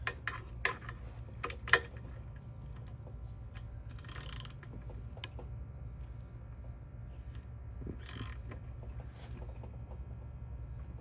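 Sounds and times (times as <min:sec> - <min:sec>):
sharp metal clicks: 0:02.6 - 0:05.5, 0:08.0 - 0:08.8
rapid ratchet clicking: 0:03.8 - 0:04.6, 0:08.0 - 0:08.6.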